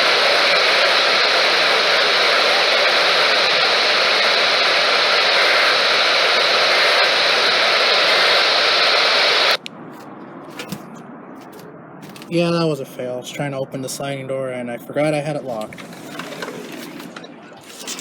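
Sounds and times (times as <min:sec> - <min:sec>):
radio static hiss: 0:00.0 - 0:09.7.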